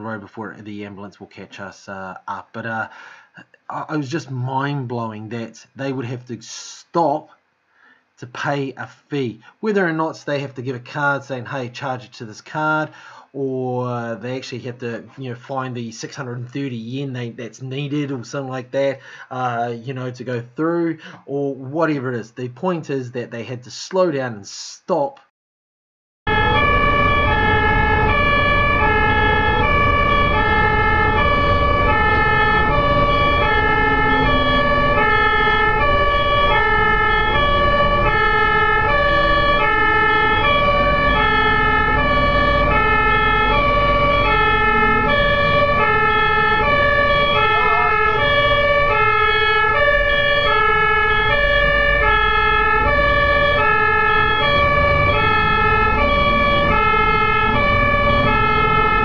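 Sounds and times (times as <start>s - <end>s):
ambulance two-tone siren: 26.3s - 59.0s
low road rumble: 26.3s - 59.0s.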